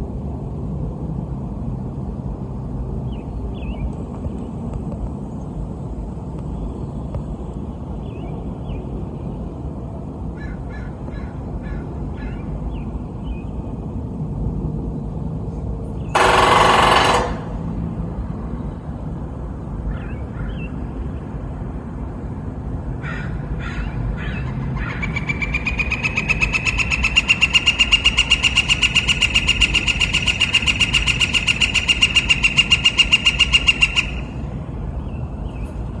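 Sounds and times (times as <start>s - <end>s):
woodpecker drumming on metal: 16.2s - 17.8s, 25.8s - 34.3s.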